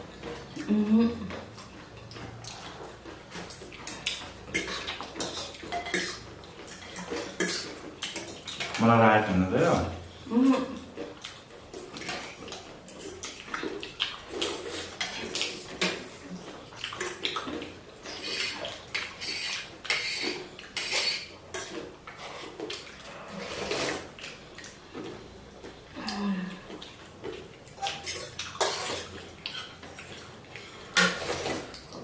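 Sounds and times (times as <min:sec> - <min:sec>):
spoons clinking against bowls: 0:04.5 - 0:08.8
wet slurping: 0:16.7 - 0:21.3, 0:22.2 - 0:24.8, 0:27.8 - 0:32.0.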